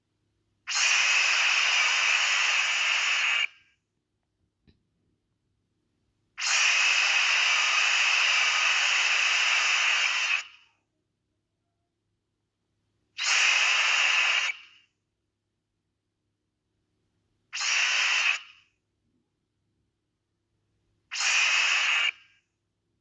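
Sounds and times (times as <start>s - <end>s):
hissing noise burst: 0.7s - 3.6s, 6.4s - 10.7s, 13.2s - 14.9s, 17.6s - 18.6s, 21.1s - 22.3s.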